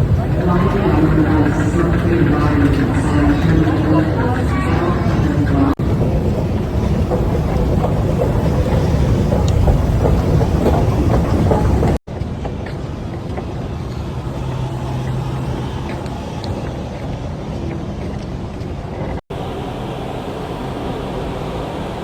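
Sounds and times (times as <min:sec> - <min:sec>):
vehicle rumble: 0:05.7 - 0:20.2
low hum: 0:12.6 - 0:22.0.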